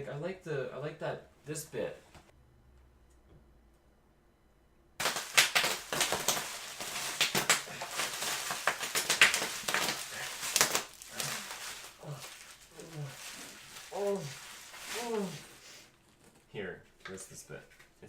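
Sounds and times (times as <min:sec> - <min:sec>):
packaging crinkling and rustling: 0:05.0 - 0:16.3.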